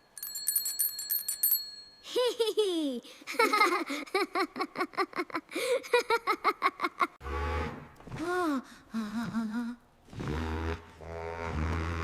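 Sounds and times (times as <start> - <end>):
high playful giggling: 2.0 - 7.2.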